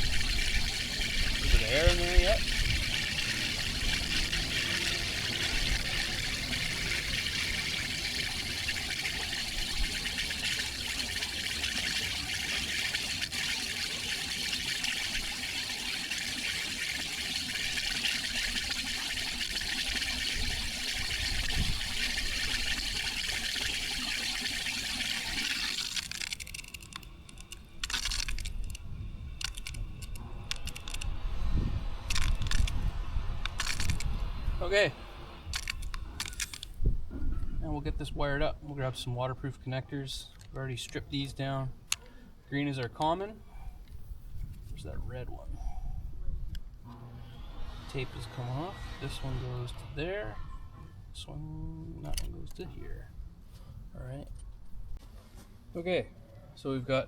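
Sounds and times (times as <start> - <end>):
sprinkler water hissing: 0.0 - 31.3.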